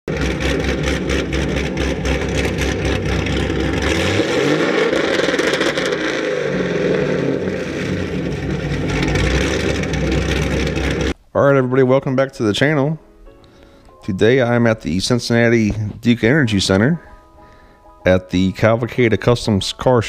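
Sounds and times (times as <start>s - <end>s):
car engine revving: 0.0s - 11.2s.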